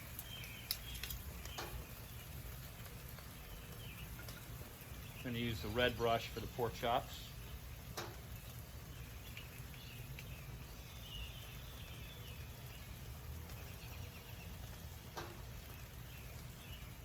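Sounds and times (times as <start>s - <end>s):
faint bird chirps: 7.3s - 14.6s.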